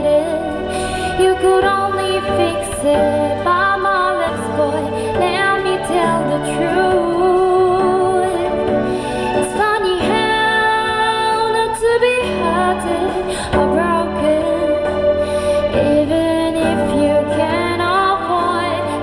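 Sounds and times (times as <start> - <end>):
woman singing: 0.0 - 19.0.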